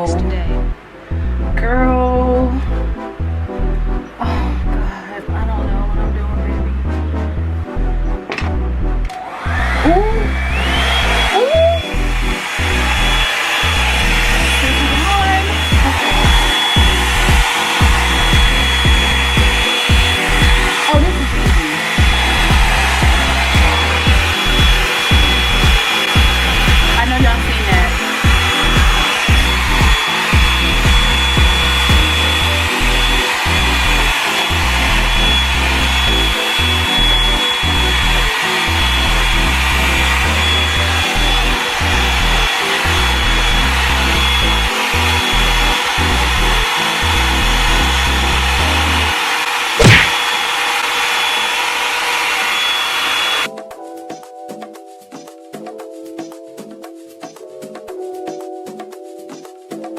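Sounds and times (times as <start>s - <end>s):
hot-air brush dryer running: 9.1s - 53.5s
background music with beat: 10.6s - 49.2s, 53.5s - 59.9s.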